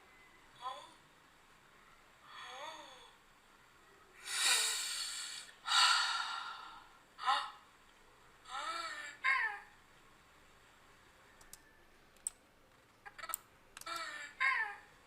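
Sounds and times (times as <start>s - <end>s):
person gasping and breathing heavily: 4.2s - 7.6s.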